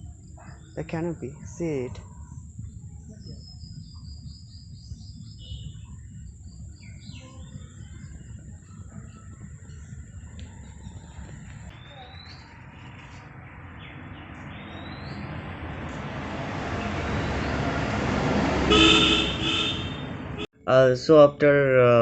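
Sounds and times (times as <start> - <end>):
birds chirping: 0.0 - 20.4
vehicle approaching: 5.1 - 20.5
vehicle horn: 16.7 - 20.5.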